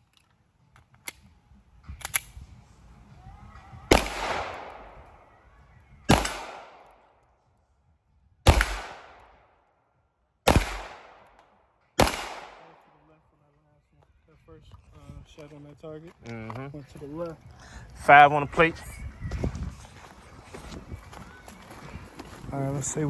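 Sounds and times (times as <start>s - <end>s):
handgun shots with echo: 3.9s - 5.1s, 6.1s - 7.1s, 8.5s - 9.5s, 10.5s - 13.0s.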